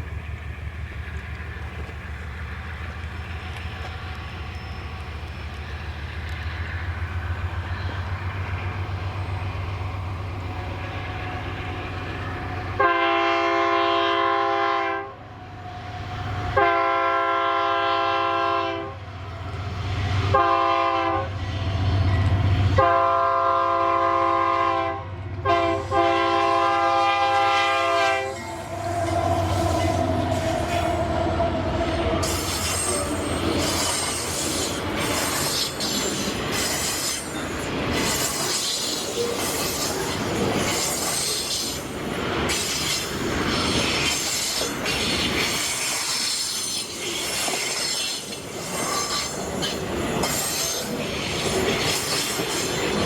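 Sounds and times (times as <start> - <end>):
locomotive engine rumble: 0.0 - 13.0, 26.4 - 45.6
train air horn blasts: 12.8 - 15.2, 16.6 - 19.0, 20.3 - 21.3, 22.8 - 33.3.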